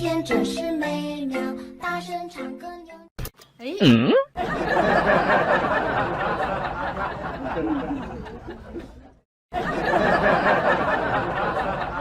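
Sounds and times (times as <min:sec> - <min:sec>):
people chuckling: 0:03.8 - 0:12.0.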